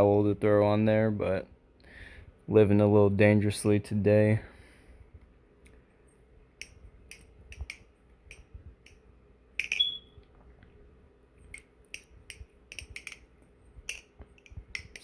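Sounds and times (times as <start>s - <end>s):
butterfly knife metallic clicks: 6.6s - 9.0s, 9.6s - 10.0s, 11.5s - 15.0s.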